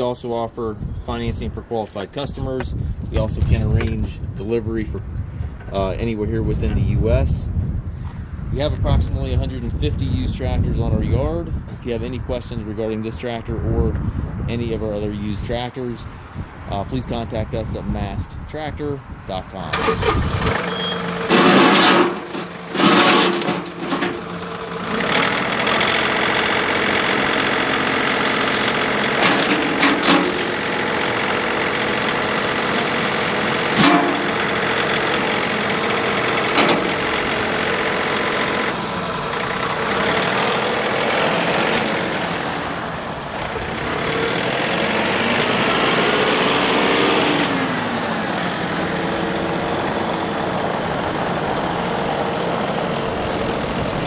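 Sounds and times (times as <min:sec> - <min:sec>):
diesel tractor engine running: 0:19.6 - 0:54.0.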